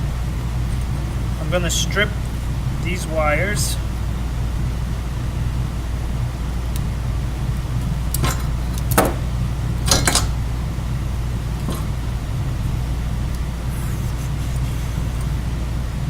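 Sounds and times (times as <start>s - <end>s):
low hum: 0.0s - 16.0s
wire stripper clicking: 7.8s - 10.4s.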